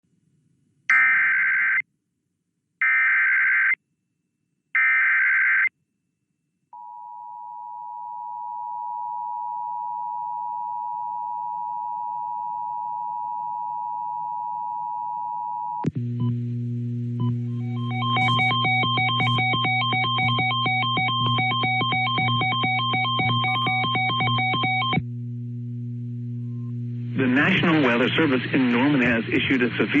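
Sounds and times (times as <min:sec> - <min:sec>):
two-tone electronic attention signal: 0:17.2 - 0:25.0
screeching digital data bursts: 0:17.6 - 0:25.0.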